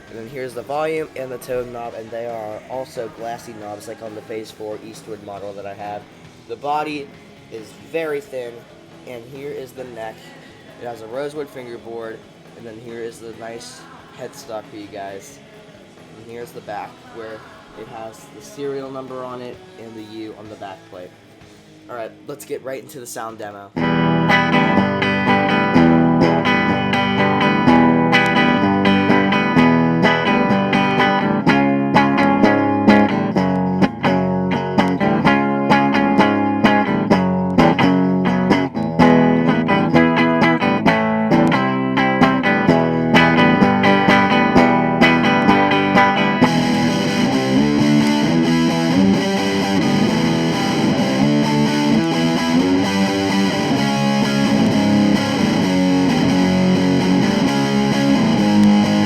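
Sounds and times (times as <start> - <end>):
electric guitar through amplifier: 23.7 - 59.0.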